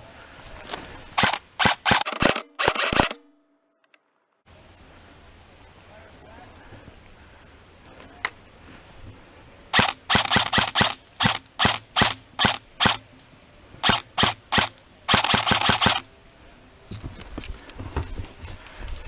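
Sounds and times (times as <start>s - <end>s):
airsoft gun shots: 1.2s - 3.2s, 9.7s - 13.0s, 13.8s - 16.0s.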